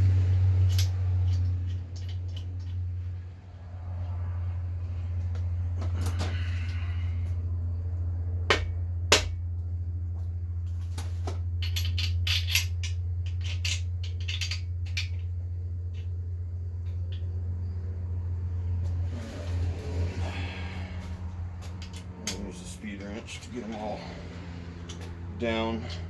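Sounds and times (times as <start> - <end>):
steady low hum: 0.0 - 26.0
metal tools clinking: 0.3 - 2.8, 11.6 - 15.3, 24.8 - 26.0
sharp metal knocks: 8.5 - 9.4.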